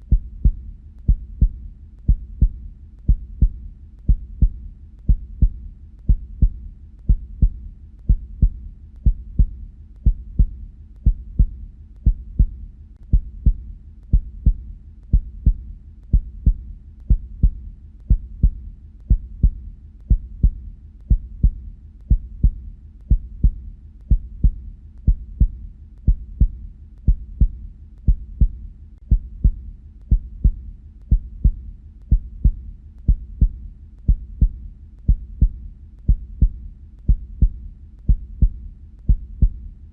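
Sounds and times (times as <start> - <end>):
heartbeat: 0.0 - 39.9.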